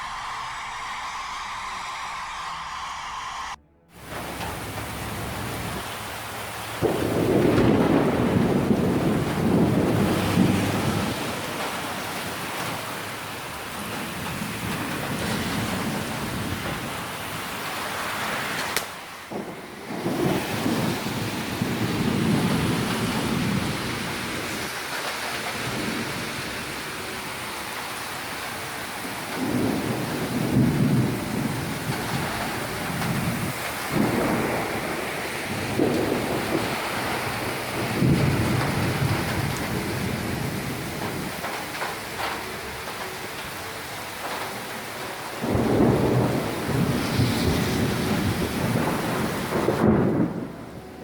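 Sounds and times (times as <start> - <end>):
heavy rain pouring: 0.0 - 51.0
thunder rumbling: 0.0 - 51.0.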